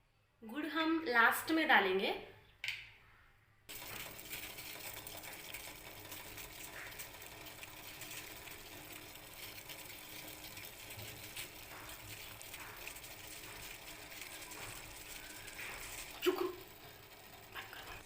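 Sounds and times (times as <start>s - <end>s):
gas stove hiss: 3.7s - 18.0s
water boiling in a pot: 3.7s - 18.0s.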